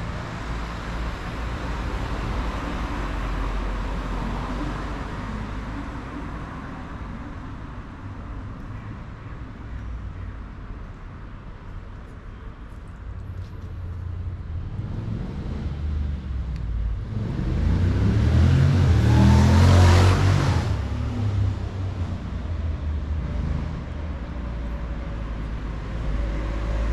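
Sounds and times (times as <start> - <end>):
low traffic hum: 0.0 - 26.9
vehicle passing by: 14.6 - 26.9.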